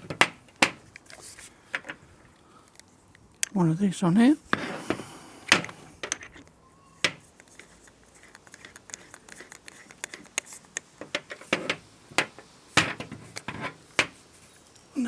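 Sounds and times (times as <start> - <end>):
fittings clicking and scraping: 4.5 - 14.9.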